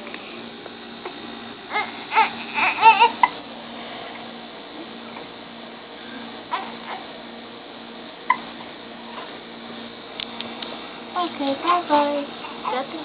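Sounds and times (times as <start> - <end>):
baby whimpering and crying: 1.7 - 3.3, 6.5 - 7.1.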